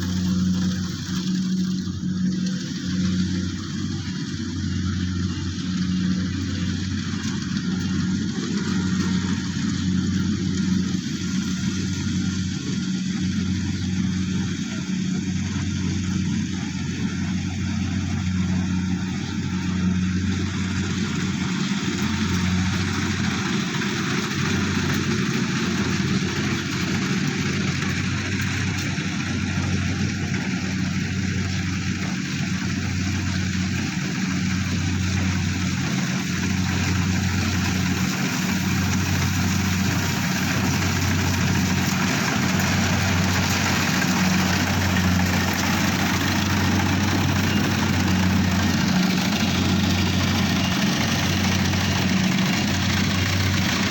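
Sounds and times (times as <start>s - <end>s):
harvesting machine engine running: 0.0s - 53.9s.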